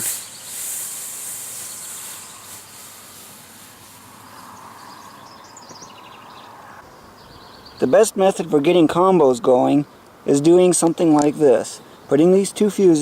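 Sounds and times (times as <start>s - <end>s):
smoke fireworks hissing: 0.0s - 4.6s.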